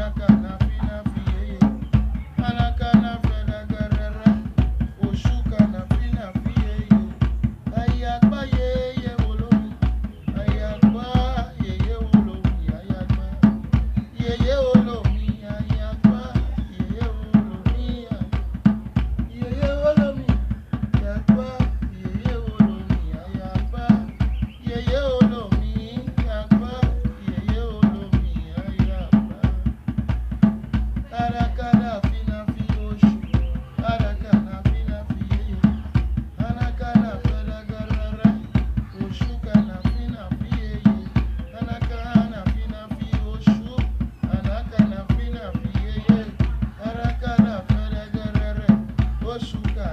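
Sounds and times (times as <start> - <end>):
loud drumming: 0.0 - 49.9
person singing: 31.0 - 49.9.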